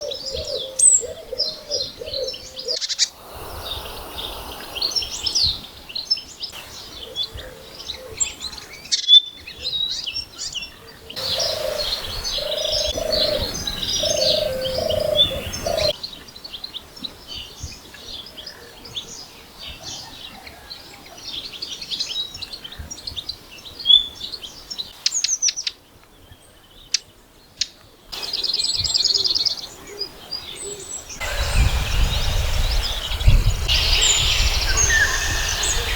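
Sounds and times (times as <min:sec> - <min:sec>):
low cooing bird call: 0:00.0 - 0:05.6, 0:11.2 - 0:16.0, 0:29.9 - 0:35.9
songbirds chirping and singing: 0:00.0 - 0:35.9.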